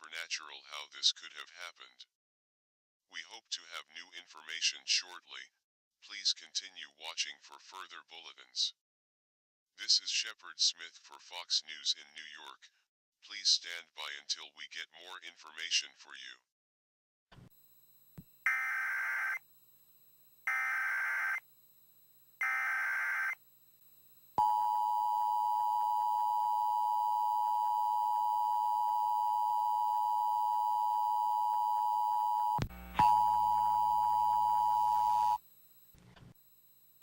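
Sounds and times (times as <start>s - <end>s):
buzzy data tone bursts: 32.6s - 37.0s.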